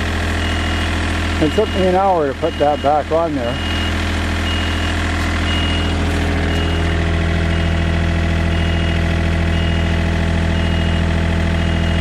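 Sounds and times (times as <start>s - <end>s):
engine idling: 0.0s - 12.0s
short high-pitched beep: 1.6s - 4.9s, 5.5s - 5.9s, 8.5s - 9.9s, 10.6s - 11.0s, 11.6s - 12.0s.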